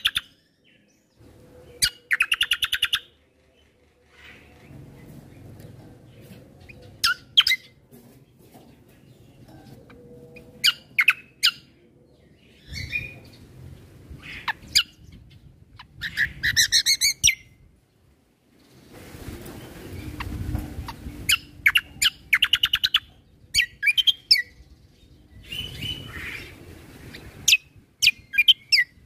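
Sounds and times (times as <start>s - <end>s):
songbird calling: 0.0s - 5.4s, 6.0s - 7.8s, 9.2s - 13.5s, 19.9s - 29.0s.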